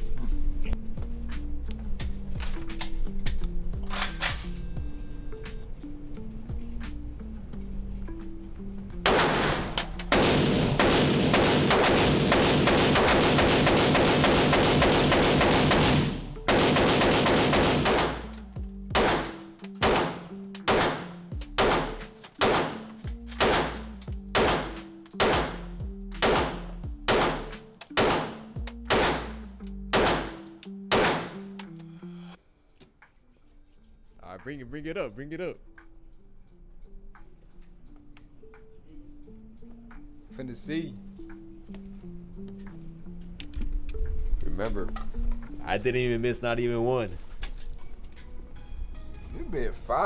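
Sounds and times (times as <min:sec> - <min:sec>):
background music: 0:00.0 - 0:50.0
handgun shots: 0:09.1 - 0:31.7.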